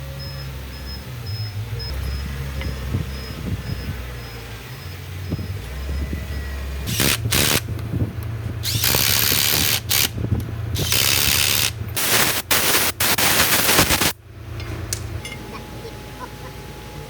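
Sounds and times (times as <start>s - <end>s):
pneumatic impact wrench bursts: 6.8s - 7.8s, 8.6s - 14.2s.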